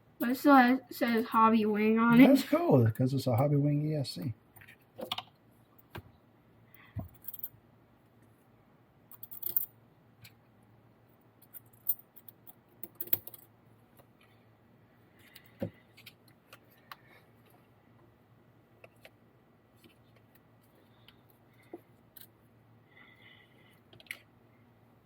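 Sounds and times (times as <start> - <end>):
metal parts clicking and jingling: 7.1 - 7.5, 9.1 - 9.7.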